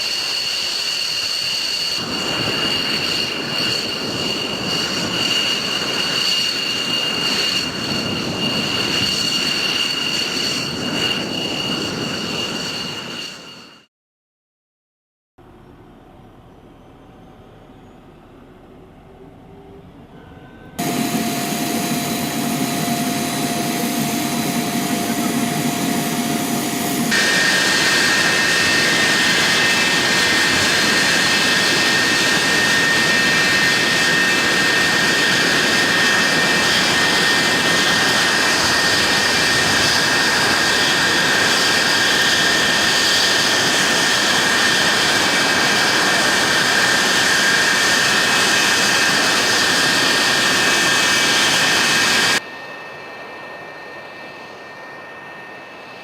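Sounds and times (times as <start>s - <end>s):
jet engine whine: 0.0s - 13.9s, 15.4s - 56.0s.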